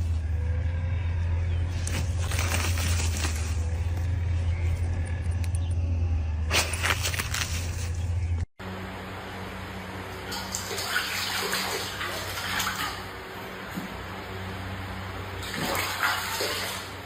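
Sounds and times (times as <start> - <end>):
faint low hum: 0.0 - 17.0
water running: 10.2 - 13.9, 15.3 - 17.0.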